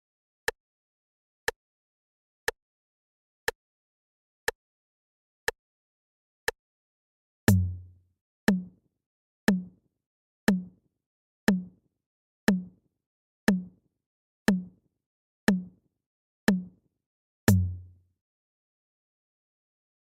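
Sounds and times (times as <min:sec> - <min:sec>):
timer ticking with low thud: 0:07.5 - 0:07.9, 0:08.5 - 0:08.8, 0:09.5 - 0:09.8, 0:10.5 - 0:10.8, 0:11.5 - 0:11.8, 0:12.5 - 0:12.8, 0:13.5 - 0:13.8, 0:14.5 - 0:14.8, 0:15.5 - 0:15.8, 0:16.5 - 0:16.8, 0:17.5 - 0:17.9.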